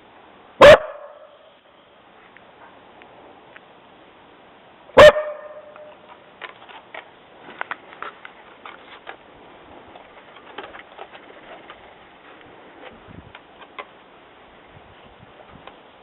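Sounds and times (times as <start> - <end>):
dog barking: 0.6 - 1.3, 5.0 - 5.8.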